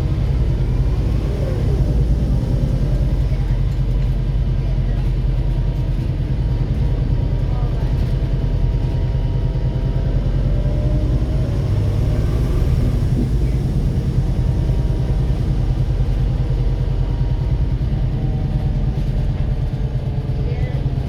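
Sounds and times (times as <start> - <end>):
diesel bus engine knocking: 0.0 - 21.0.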